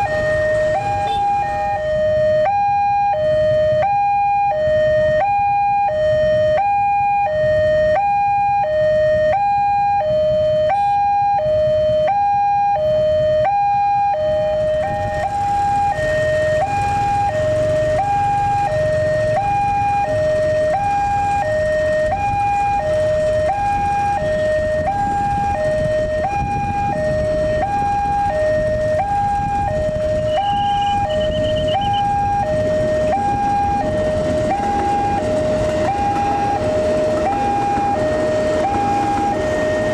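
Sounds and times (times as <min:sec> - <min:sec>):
level crossing two-tone alarm: 0:00.0 - 0:39.9
steady rushing noise: 0:14.5 - 0:39.9.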